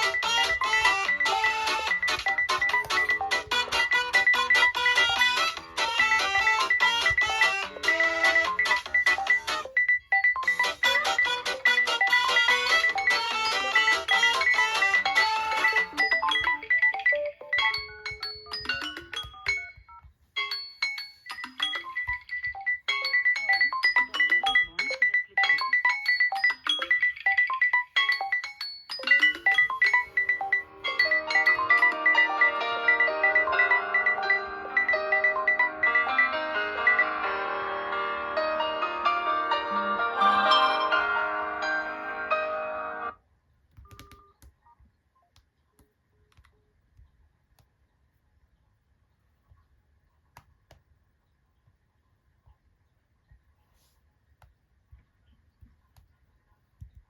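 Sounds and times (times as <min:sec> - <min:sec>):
tone with held notes: 0:00.0 - 0:09.8, 0:28.2 - 0:43.1
melodic phone ringtone: 0:00.0 - 0:19.8, 0:20.4 - 0:43.2.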